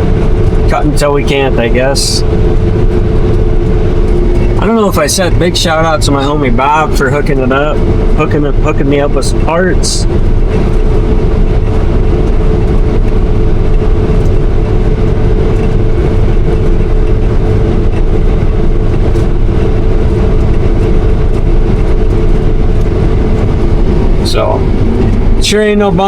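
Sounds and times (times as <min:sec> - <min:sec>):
combine harvester drone: 0:00.0 - 0:26.0
steady machine whine: 0:00.0 - 0:26.0.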